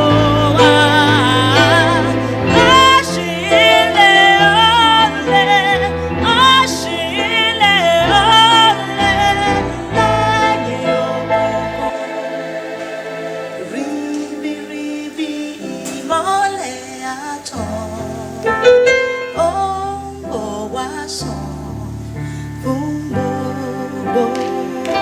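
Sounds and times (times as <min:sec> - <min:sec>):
sustained keyboard chords: 0:00.0 - 0:18.8
person singing: 0:00.0 - 0:25.0.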